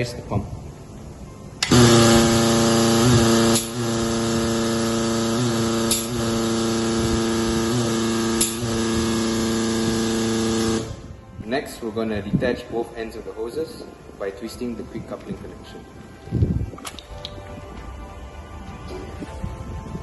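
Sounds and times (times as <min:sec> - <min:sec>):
air-driven pump humming: 0:00.0 - 0:11.4.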